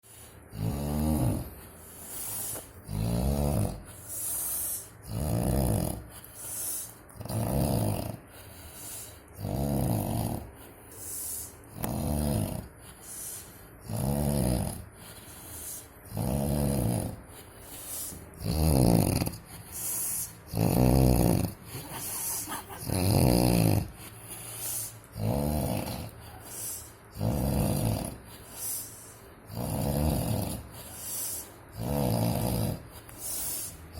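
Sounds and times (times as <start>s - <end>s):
loud snoring: 0.5s - 8.3s, 9.0s - 33.9s.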